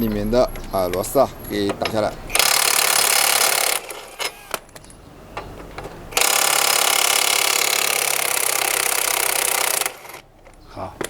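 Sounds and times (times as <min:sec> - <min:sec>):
cordless drill running: 0:02.3 - 0:04.6, 0:06.1 - 0:10.3.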